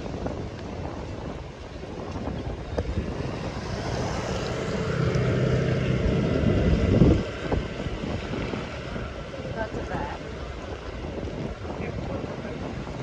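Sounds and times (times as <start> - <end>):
street traffic noise: 2.8 - 7.8
vehicle engine passing: 3.0 - 8.7.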